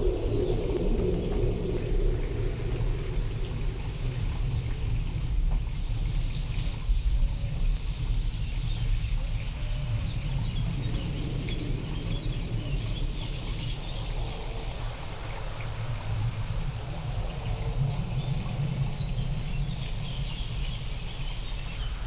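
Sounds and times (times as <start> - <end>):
thunder rumble: 0.0 - 6.6
steady rain: 0.0 - 22.0.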